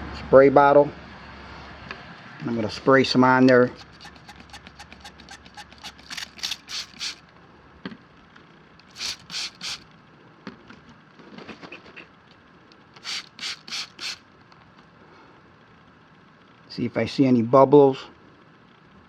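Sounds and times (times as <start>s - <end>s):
spray bottle squirting hisses: 3.8s - 7.2s, 8.9s - 9.8s, 13.0s - 14.2s.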